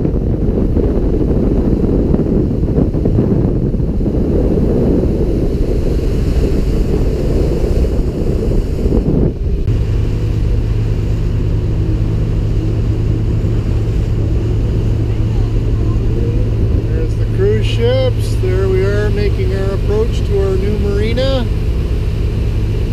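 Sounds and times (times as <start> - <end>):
boat engine drone: 0.0 - 22.9
water rushing: 0.0 - 22.9
wind buffeting microphone: 0.0 - 22.9.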